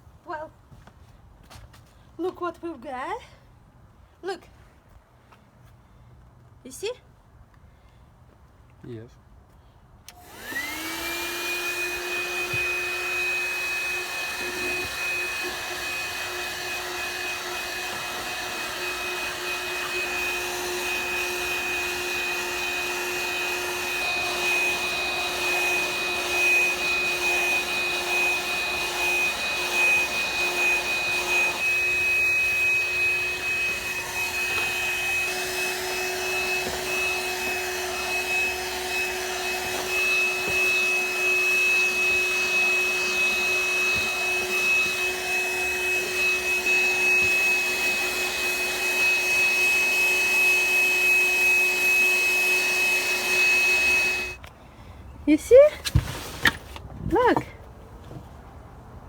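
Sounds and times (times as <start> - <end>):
handheld vacuum running: 10.1 - 54.5.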